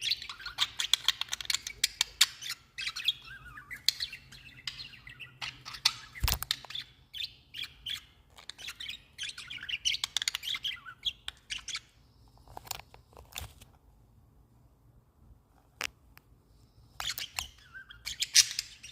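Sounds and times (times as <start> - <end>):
budgerigars chattering: 0.0 - 11.9.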